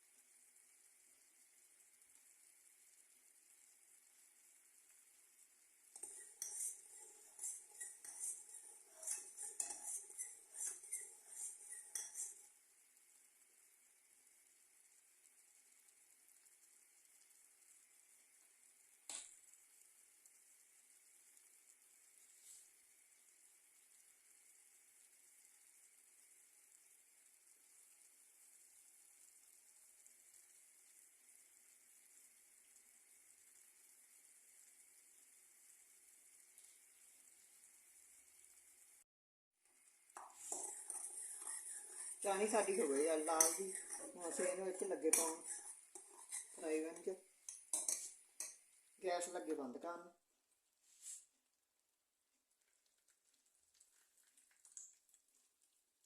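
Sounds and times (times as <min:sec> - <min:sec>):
sugar syrup boiling hiss: 0:00.0 - 0:49.9, 0:50.7 - 0:51.6, 0:52.3 - 0:56.0
metal spoon scraping a pot: 0:05.9 - 0:12.5, 0:40.2 - 0:48.6.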